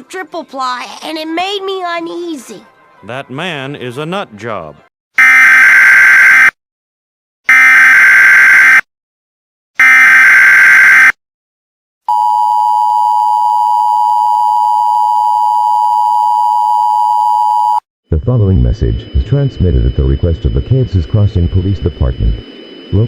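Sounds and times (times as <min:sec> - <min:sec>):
steady attention tone: 0:17.6 - 0:23.0.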